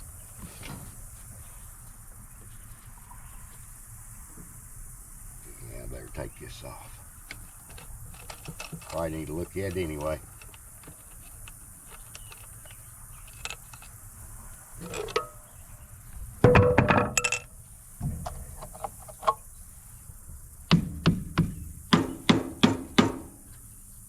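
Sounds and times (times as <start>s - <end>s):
loud metal clatter and ring: 16.5s - 17.5s
metal tools clinking and clattering: 16.5s - 17.5s.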